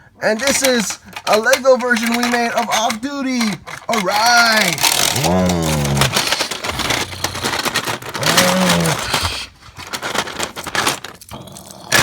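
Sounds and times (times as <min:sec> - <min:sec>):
plastic toy pieces clicking and rattling: 0:00.2 - 0:12.0
short vocal sound: 0:05.2 - 0:06.2.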